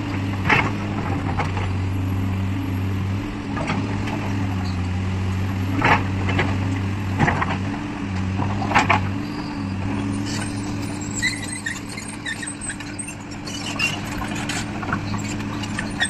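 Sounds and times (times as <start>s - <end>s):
excavator diesel engine running: 0.0s - 16.0s
machine scraping and squeaking: 8.7s - 16.0s.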